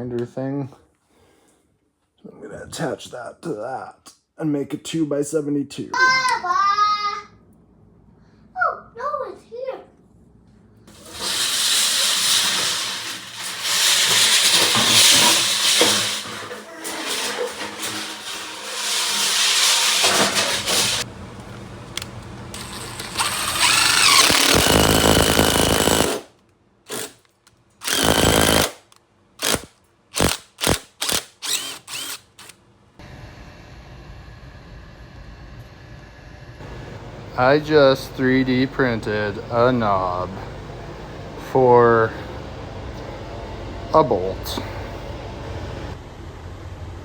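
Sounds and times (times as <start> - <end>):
power tool short bursts: 10.9 - 21.0, 22.6 - 26.3, 26.9 - 27.2, 27.8 - 28.8, 29.4 - 32.6
power tool grinding steel: 10.9 - 21.1, 22.6 - 26.3, 26.9 - 27.2, 27.8 - 28.8, 29.4 - 32.5
power tool whining: 10.9 - 21.1, 22.5 - 26.3, 26.9 - 27.2, 27.8 - 28.8, 29.4 - 32.6.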